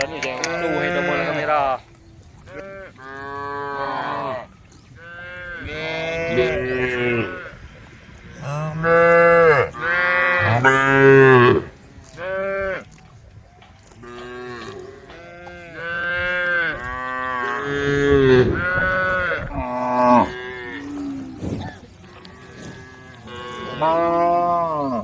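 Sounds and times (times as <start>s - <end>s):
cattle mooing: 5.0s - 7.6s, 8.3s - 12.8s, 14.0s - 25.0s.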